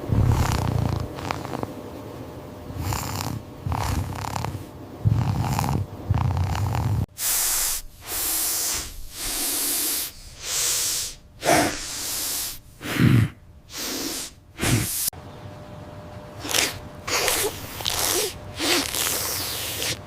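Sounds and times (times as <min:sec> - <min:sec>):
short low snorts: 0:00.0 - 0:01.7, 0:02.8 - 0:15.1, 0:16.4 - 0:20.0
long loud hisses: 0:07.1 - 0:15.1.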